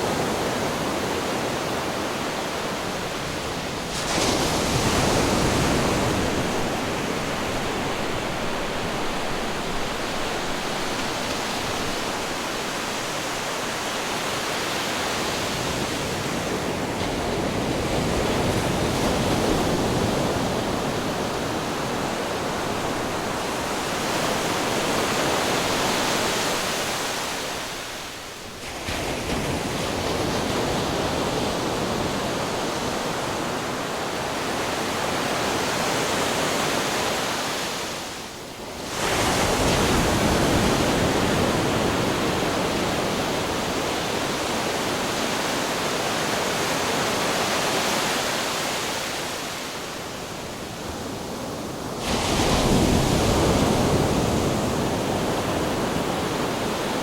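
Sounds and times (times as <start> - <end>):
ocean waves crashing against rocks: 0.0 - 57.0.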